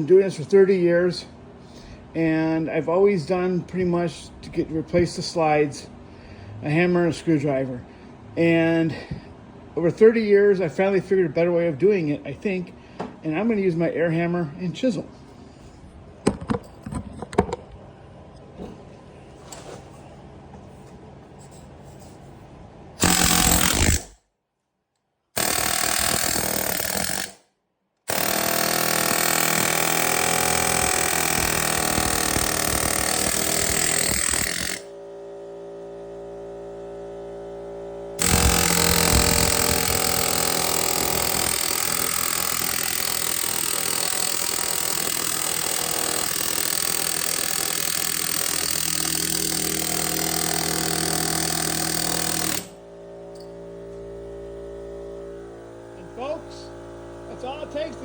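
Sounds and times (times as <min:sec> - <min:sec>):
pneumatic air hammer hammering: 0:23.0 - 0:24.2, 0:25.4 - 0:27.4, 0:28.1 - 0:35.0, 0:38.2 - 0:53.6.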